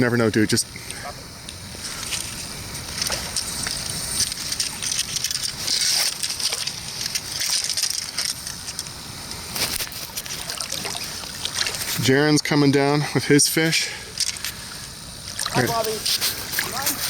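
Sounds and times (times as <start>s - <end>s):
short splashes: 9.5s - 12.2s, 14.2s - 17.0s
river water rushing: 10.0s - 12.1s, 14.2s - 17.0s
rustling handling noises: 15.4s - 17.0s.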